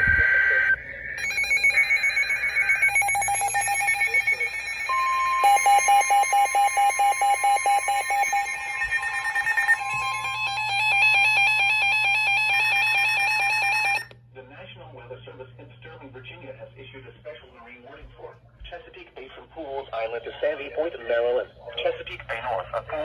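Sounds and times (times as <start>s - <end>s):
data tone bursts: 0.0s - 14.1s
rapid alarm beeping: 0.0s - 14.1s
steady warning alarm tone: 0.0s - 14.2s.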